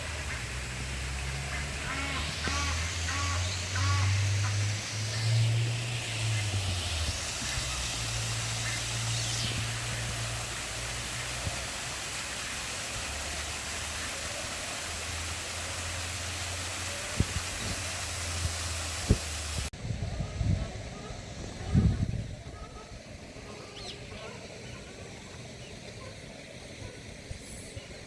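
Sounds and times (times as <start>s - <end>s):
wind on microphone: 17.2s - 23.2s.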